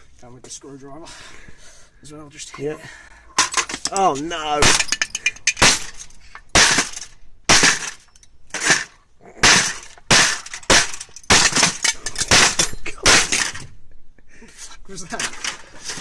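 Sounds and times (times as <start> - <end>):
plastic parts snapping and smashing: 3.4 - 13.8, 15.1 - 16.0.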